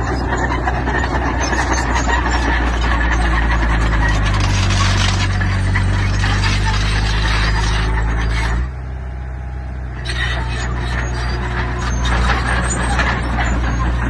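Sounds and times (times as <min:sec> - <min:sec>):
metallic clatter: 0:00.0 - 0:08.6
heavy diesel machinery engine: 0:00.0 - 0:14.0.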